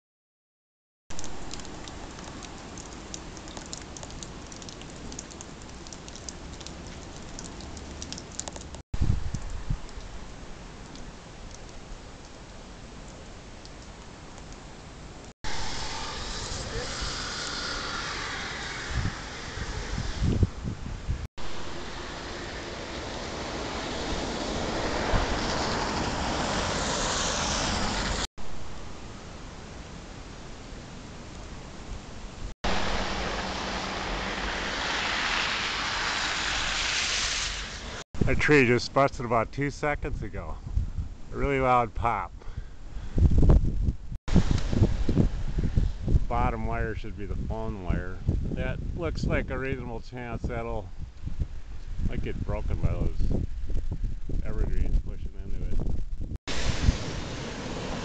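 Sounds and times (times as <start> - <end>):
wind rushing: 15.4 - 28.3, 32.6 - 38.8, 43.0 - 46.5, 50.8 - 58.0
wet snow falling hiss: 15.5 - 28.3, 32.7 - 39.1, 56.5 - 58.0.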